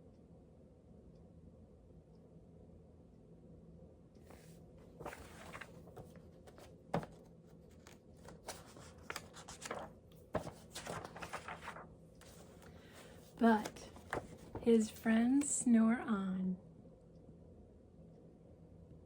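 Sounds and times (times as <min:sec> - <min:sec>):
paper rustling: 0:04.3 - 0:15.0.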